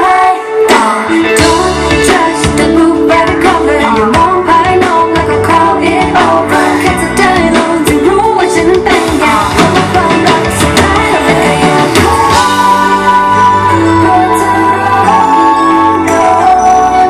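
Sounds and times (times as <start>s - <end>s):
person singing pop song: 0.0s - 17.0s
drum beat: 8.8s - 12.8s.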